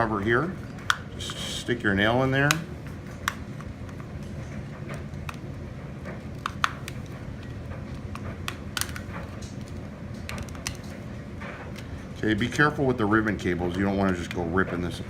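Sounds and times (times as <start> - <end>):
plastic clicks and snaps: 2.4 - 5.5, 6.4 - 11.0.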